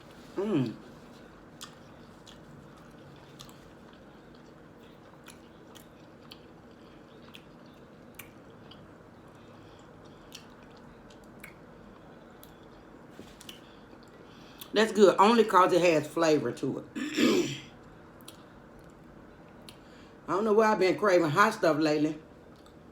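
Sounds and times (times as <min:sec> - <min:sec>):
person chewing with mouth clicks: 0:01.6 - 0:08.9, 0:09.8 - 0:14.7.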